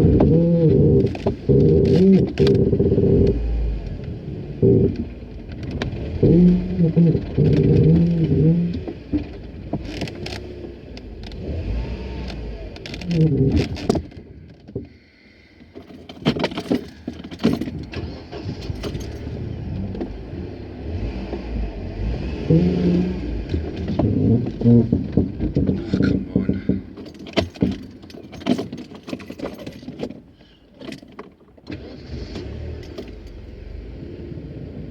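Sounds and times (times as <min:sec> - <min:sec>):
car engine running: 0:00.0 - 0:15.8, 0:16.6 - 0:28.3
road noise: 0:00.0 - 0:34.9
loose knocks and rattles: 0:12.8 - 0:14.9, 0:15.7 - 0:18.1, 0:23.4 - 0:31.6.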